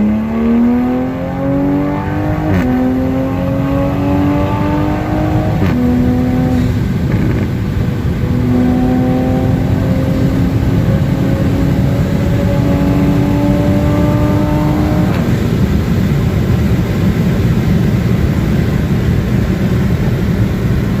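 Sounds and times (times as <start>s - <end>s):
car engine pulling under load: 0.0s - 16.0s
road and wind noise: 0.0s - 21.0s.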